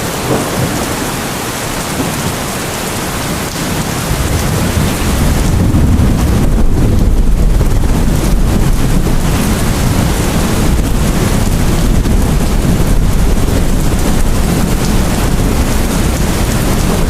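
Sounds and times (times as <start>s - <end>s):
heavy rain: 0.0s - 17.0s
deep distant rumble: 3.8s - 17.0s.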